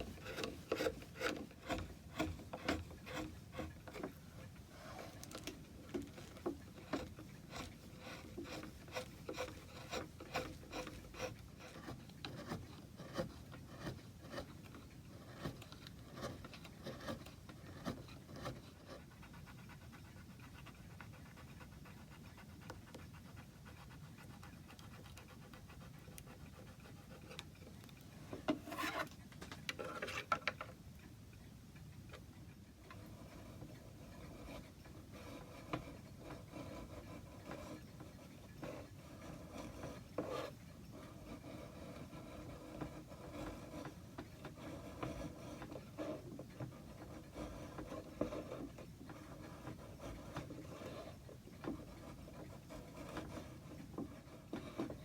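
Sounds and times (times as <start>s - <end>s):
rasp rubbing on wood: 0.0s - 27.3s, 28.4s - 29.1s, 33.0s - 55.0s.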